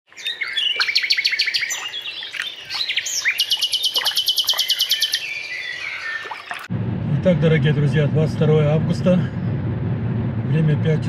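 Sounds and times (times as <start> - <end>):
songbirds singing: 0.1 - 6.7
fast high bird trill: 0.2 - 6.6.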